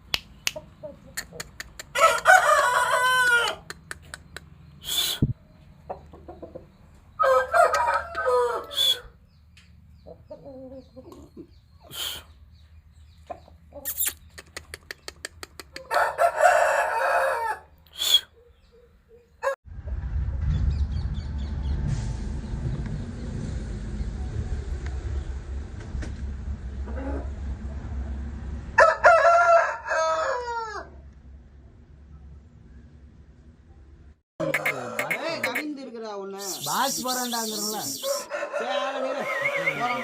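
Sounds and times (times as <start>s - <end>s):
rooster clucking: 0.5s - 9.2s, 10.0s - 12.2s, 13.2s - 18.5s, 34.4s - 35.7s, 36.4s - 40.0s
roosters crowing: 1.8s - 3.8s, 7.1s - 9.2s, 15.8s - 17.8s, 28.7s - 31.1s, 34.4s - 35.6s, 36.4s - 40.0s.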